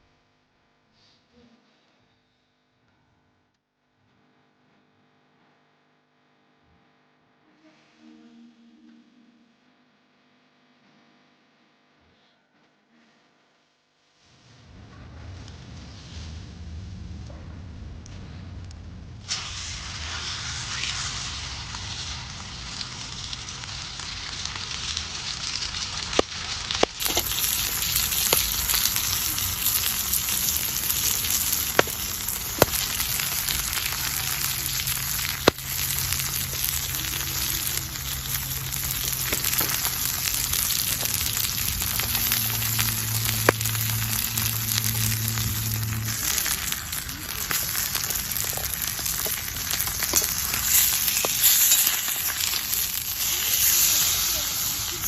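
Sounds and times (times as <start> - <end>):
food sizzling on a grill: 19.3 - 55.0
sharp pops: 26.0 - 53.8.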